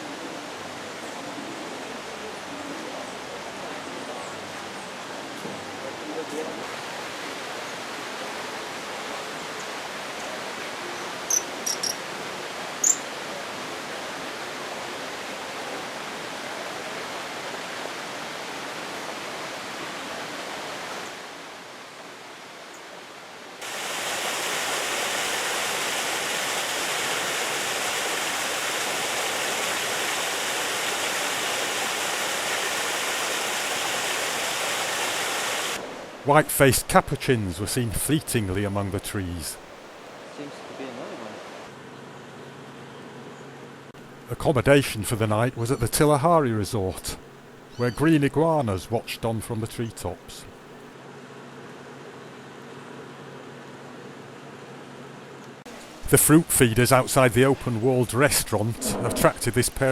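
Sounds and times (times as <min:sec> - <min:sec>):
falling water rushing: 0:00.0 - 0:22.4, 0:23.0 - 0:41.7, 0:55.7 - 0:59.9.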